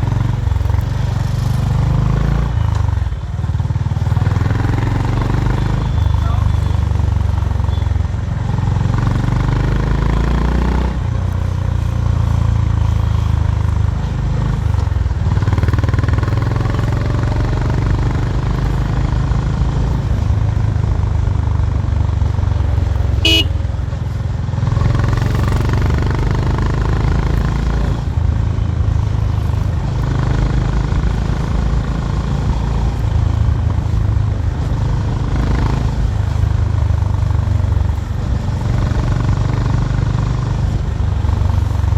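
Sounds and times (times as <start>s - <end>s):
motorcycle engine revving: 0.0s - 41.9s
high-pitched horn beep: 23.2s - 23.6s.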